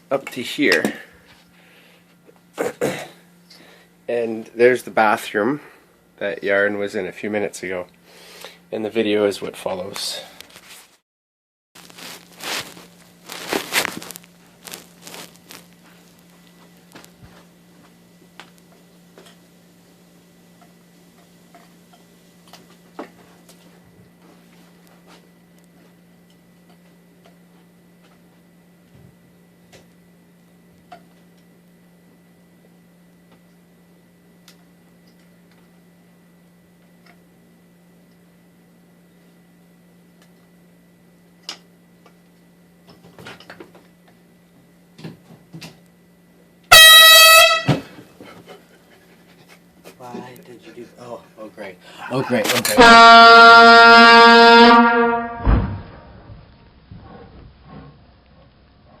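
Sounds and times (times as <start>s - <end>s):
steady low hum: 0.0s - 10.9s, 11.8s - 59.0s
car air horn blast: 46.7s - 47.9s, 52.7s - 56.1s.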